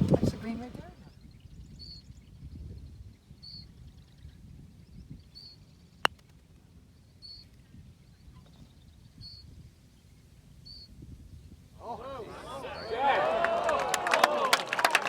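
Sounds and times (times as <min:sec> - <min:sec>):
wind rumble on microphone: 0:00.0 - 0:05.6, 0:07.6 - 0:11.8.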